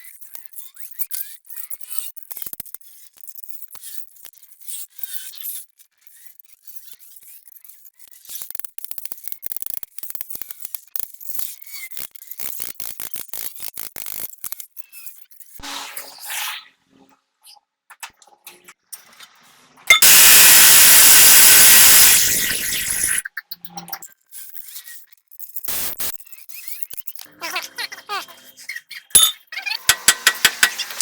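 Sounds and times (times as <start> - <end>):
fast ratchet clicking: 19.9 - 23.2, 29.9 - 31.0.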